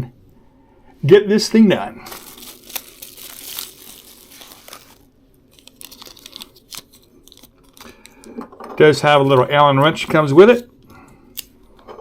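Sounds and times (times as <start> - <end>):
plastic bag crinkling: 2.0 - 8.3.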